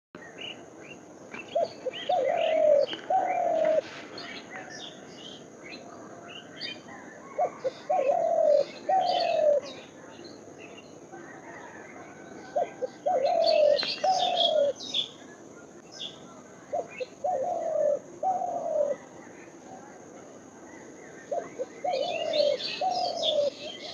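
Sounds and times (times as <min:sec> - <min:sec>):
small birds chirping: 0:00.2 - 0:23.9
dove cooing: 0:01.4 - 0:04.7, 0:06.0 - 0:09.8, 0:11.2 - 0:14.8, 0:16.7 - 0:19.6, 0:20.7 - 0:23.9.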